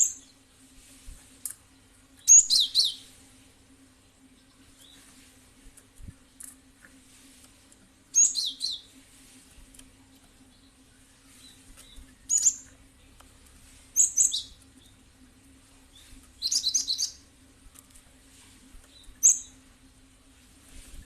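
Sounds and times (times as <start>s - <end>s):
bird high chirps: 0.0s - 0.4s, 2.2s - 3.1s, 8.1s - 8.9s, 11.4s - 12.8s, 14.0s - 14.9s, 15.9s - 17.3s, 19.0s - 19.6s.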